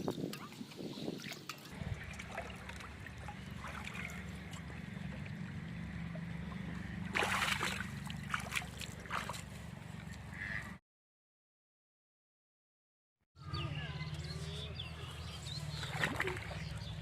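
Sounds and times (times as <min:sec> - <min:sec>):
light water sounds: 0:00.0 - 0:10.3, 0:15.7 - 0:17.0
water splash: 0:01.1 - 0:09.5, 0:15.8 - 0:16.7.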